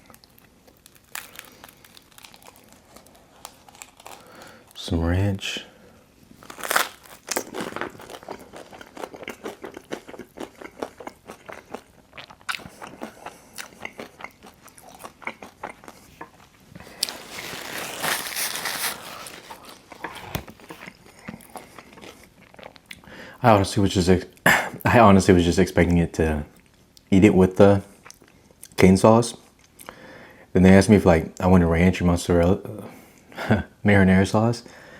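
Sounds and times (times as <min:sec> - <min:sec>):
pizza crunching and chewing: 0:00.0 - 0:23.0.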